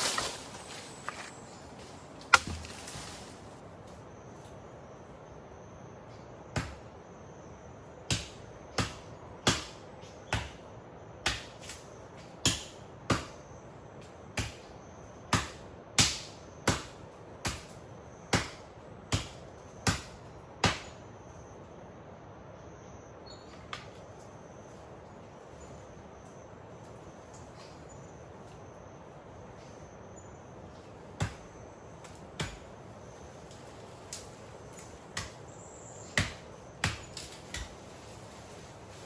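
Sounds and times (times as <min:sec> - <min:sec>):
tool striking wood: 0:02.3 - 0:02.8.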